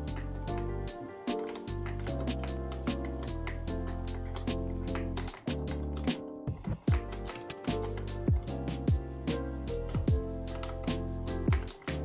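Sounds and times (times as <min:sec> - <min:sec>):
background music with deep beat: 0:00.0 - 0:12.0
mechanical keyboard keys clacking: 0:01.4 - 0:06.2, 0:06.9 - 0:08.6.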